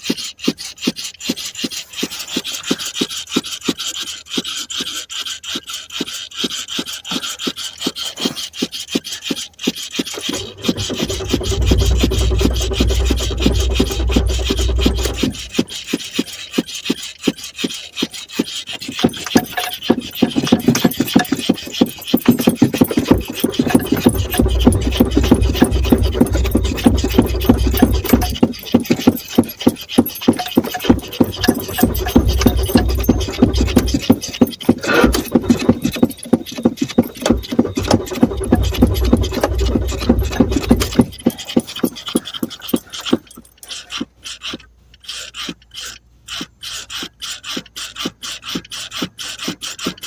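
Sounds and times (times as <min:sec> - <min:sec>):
car starter cranking engine: 0:10.1 - 0:15.9, 0:19.0 - 0:43.7
deep hum: 0:10.4 - 0:15.6, 0:23.7 - 0:28.4.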